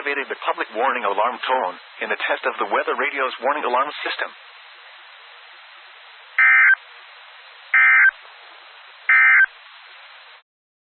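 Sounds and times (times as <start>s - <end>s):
radio hiss: 0.0s - 10.4s
data tone bursts: 6.4s - 6.8s, 7.8s - 8.1s, 9.1s - 9.5s.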